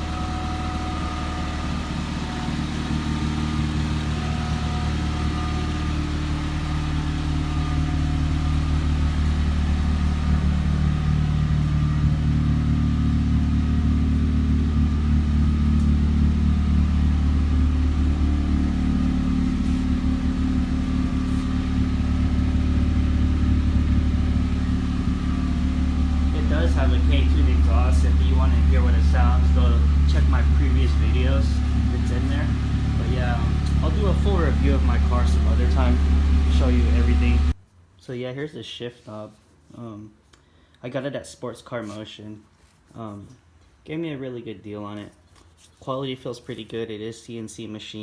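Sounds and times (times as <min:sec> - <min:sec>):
car engine idling: 0:00.0 - 0:37.6.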